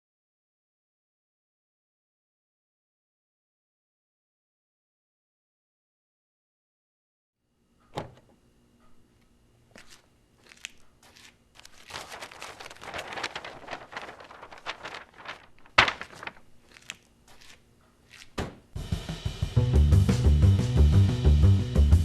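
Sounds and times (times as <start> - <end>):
crunching and crinkling: 9.7 - 18.4.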